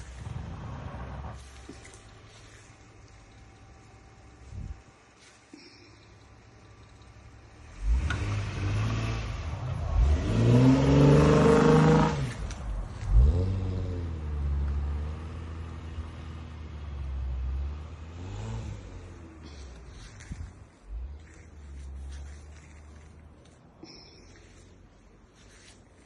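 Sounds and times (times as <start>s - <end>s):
vehicle engine revving: 0.0s - 5.3s, 6.4s - 23.2s.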